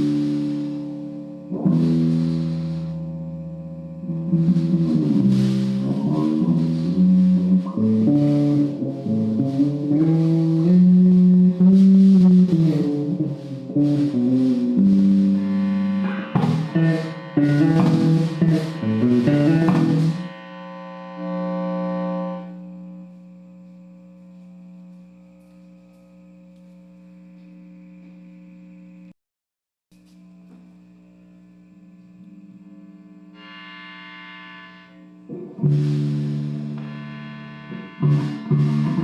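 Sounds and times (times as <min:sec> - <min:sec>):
electric guitar plucked notes and chords: 0:00.0 - 0:23.2, 0:33.4 - 0:39.0
steady electrical hum: 0:00.0 - 0:29.1, 0:30.0 - 0:39.0.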